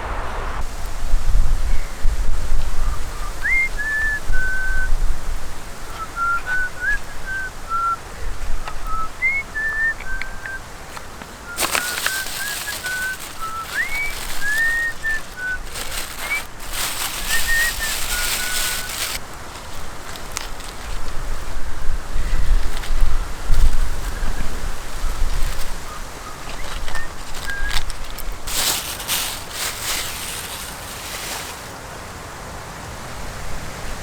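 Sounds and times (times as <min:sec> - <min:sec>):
burst of hiss: 0:00.0 - 0:01.4, 0:11.5 - 0:19.2
short whistled notes: 0:05.9 - 0:08.0, 0:11.5 - 0:19.2.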